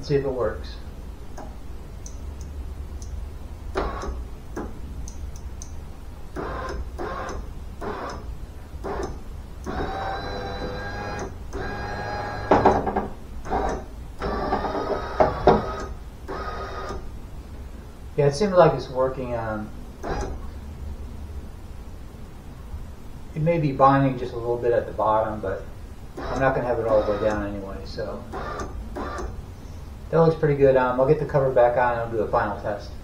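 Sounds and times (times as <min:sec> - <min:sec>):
power window motor whining: 0:03.7 - 0:04.2, 0:06.4 - 0:17.1, 0:20.0 - 0:20.4, 0:26.2 - 0:27.5, 0:28.3 - 0:29.4.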